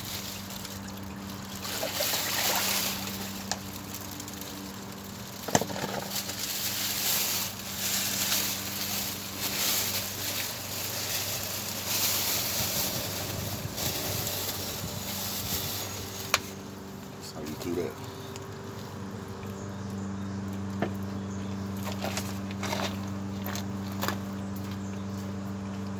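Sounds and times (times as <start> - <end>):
fluid draining into plastic bag: 0.0 - 16.5.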